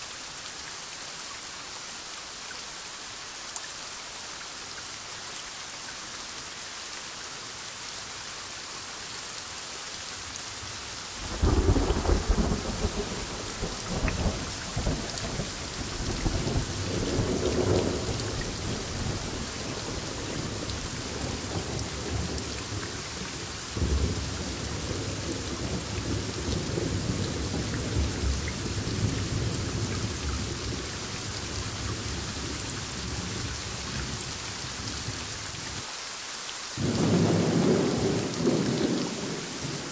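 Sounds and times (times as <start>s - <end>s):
heavy rain hissing: 0.0s - 39.9s
rolling thunder: 11.3s - 22.4s.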